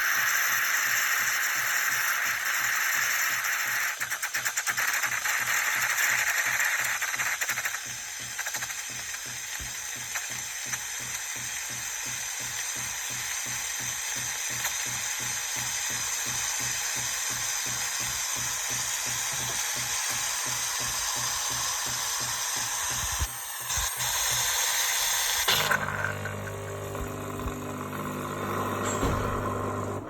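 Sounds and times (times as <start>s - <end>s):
steam hissing and sputtering: 0.0s - 29.8s
pump pulsing: 0.0s - 30.0s.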